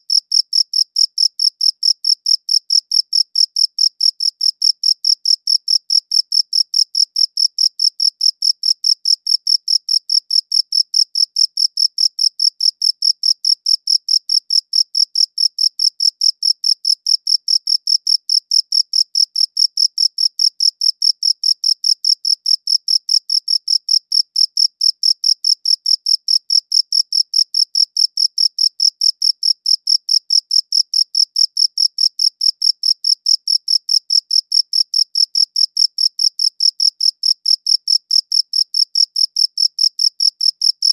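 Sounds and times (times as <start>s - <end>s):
cricket chirping: 0.1s - 40.9s.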